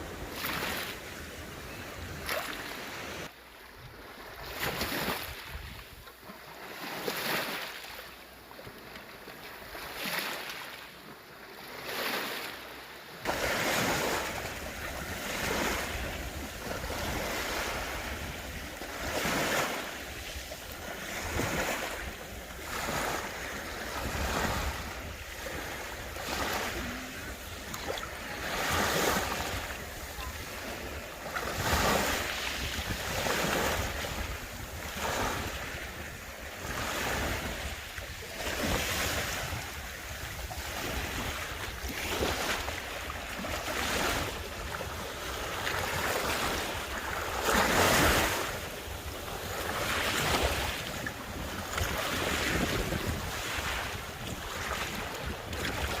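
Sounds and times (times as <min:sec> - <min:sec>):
sea waves washing in: 0:11.6 - 0:56.0
wind rumbling on microphone: 0:13.6 - 0:56.0.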